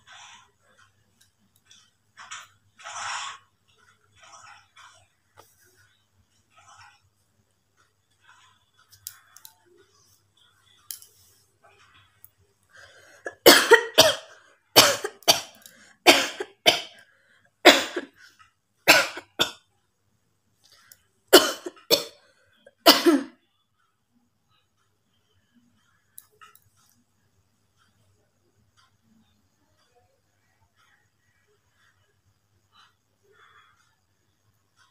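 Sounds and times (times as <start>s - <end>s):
woman coughing: 13.2s - 15.5s, 16.1s - 16.9s, 17.7s - 18.1s, 21.4s - 22.2s, 22.8s - 23.4s.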